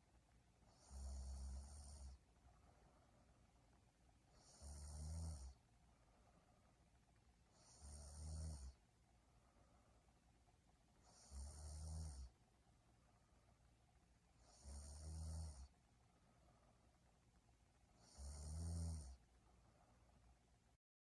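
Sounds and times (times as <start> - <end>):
woman snoring: 0.7 - 2.2, 4.3 - 5.6, 7.5 - 8.8, 11.0 - 12.3, 14.4 - 15.7, 18.0 - 19.2.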